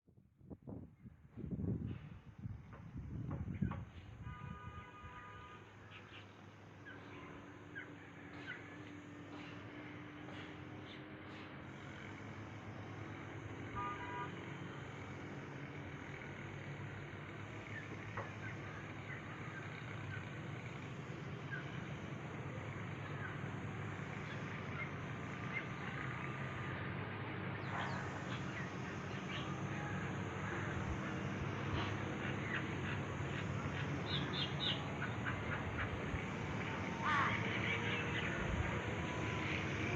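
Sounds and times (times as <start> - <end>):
distant traffic hum: 1.1 - 39.9
birds chirping: 17.6 - 39.9.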